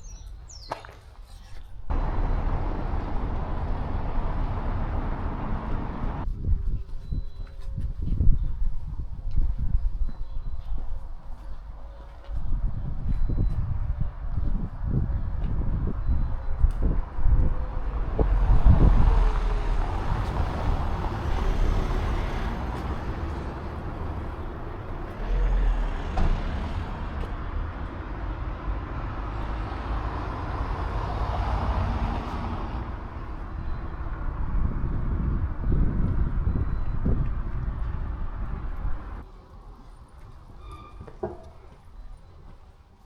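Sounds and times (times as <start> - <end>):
road noise: 0.0 - 6.5, 10.4 - 43.0
vehicle engine running: 1.9 - 6.2.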